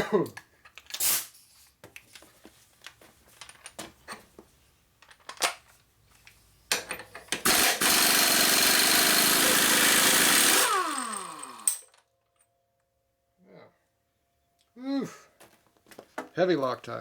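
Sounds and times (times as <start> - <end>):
impact wrench hammering: 7.4 - 11.9.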